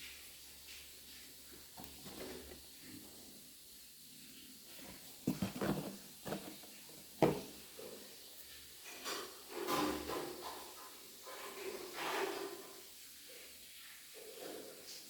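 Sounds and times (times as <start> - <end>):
knocking: 5.3 - 7.6.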